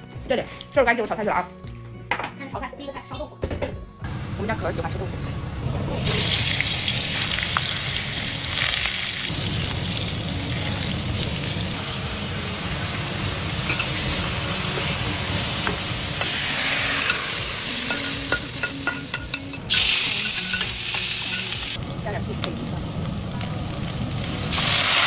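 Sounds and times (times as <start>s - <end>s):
tofu sizzling in a pan: 6.0s - 18.3s, 19.7s - 25.0s.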